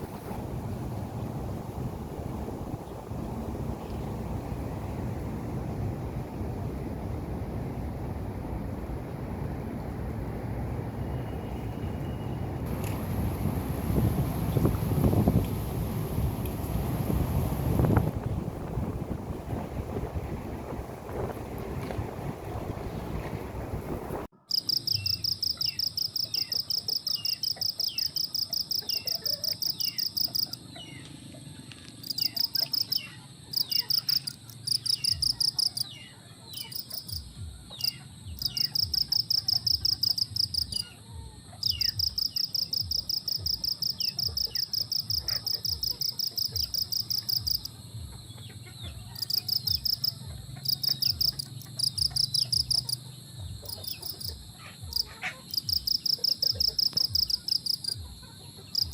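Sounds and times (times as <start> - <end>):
insects trilling: 24.5 - 58.9.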